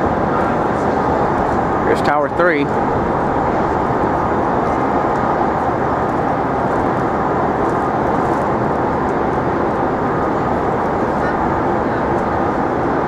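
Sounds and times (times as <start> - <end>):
city street noise: 0.0 - 13.0.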